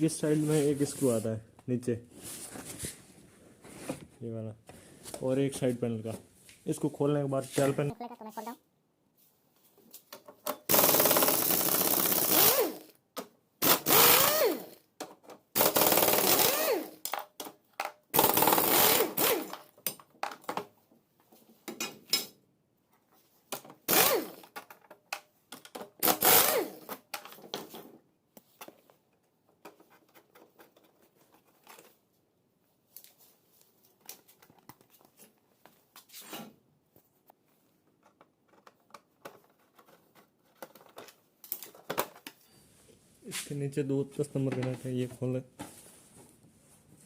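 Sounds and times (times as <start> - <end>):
power drill whirring: 13.6 - 14.8, 15.6 - 17.0, 23.9 - 24.5, 26.0 - 26.9
parts and tools rattling: 37.9 - 42.5.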